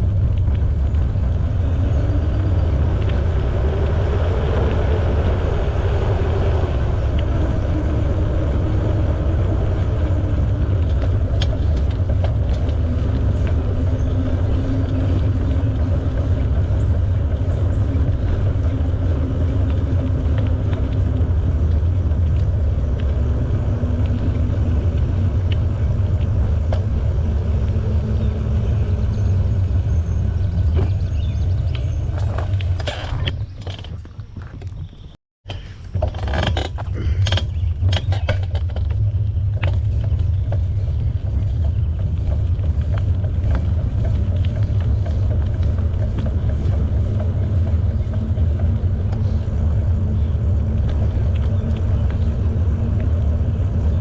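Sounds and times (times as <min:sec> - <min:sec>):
bicycle tyres rolling: 0:00.0 - 0:54.0
wind rumble on microphone: 0:00.0 - 0:54.0.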